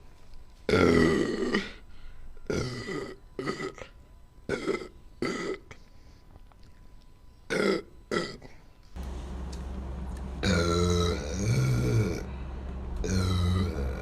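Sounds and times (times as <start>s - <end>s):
woman burping: 2.5s - 3.9s, 4.5s - 5.8s, 7.5s - 8.6s.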